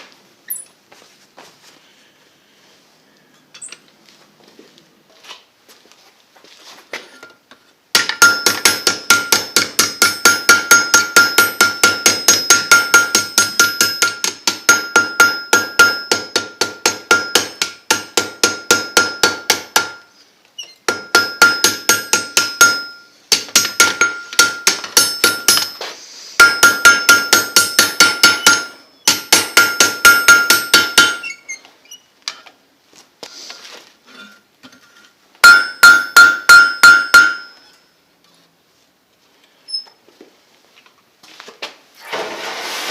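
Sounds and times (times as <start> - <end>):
hammer striking steel on anvil: 8.0 - 20.1, 20.9 - 25.8, 26.4 - 31.4, 35.4 - 37.8.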